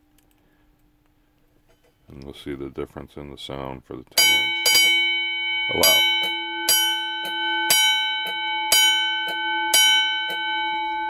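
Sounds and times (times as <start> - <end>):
crossing signal bell ringing: 4.2 - 11.0.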